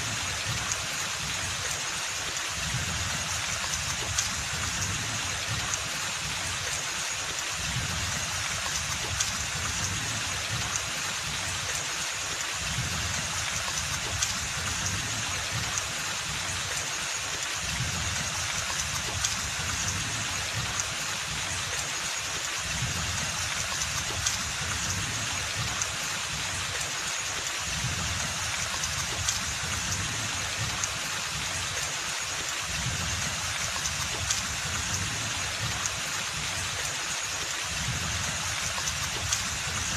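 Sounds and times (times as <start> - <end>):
individual raindrops: 0.0 - 39.9
rain falling on foliage: 0.0 - 39.9.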